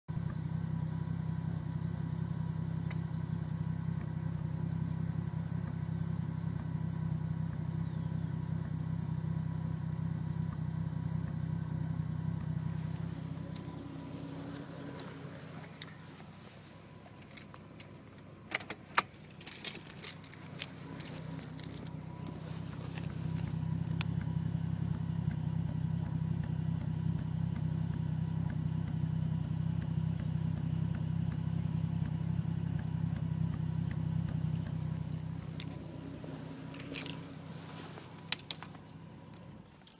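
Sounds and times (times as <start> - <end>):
car engine idling with misfire: 0.1 - 39.9
keys jingling: 17.0 - 23.1, 35.5 - 39.9.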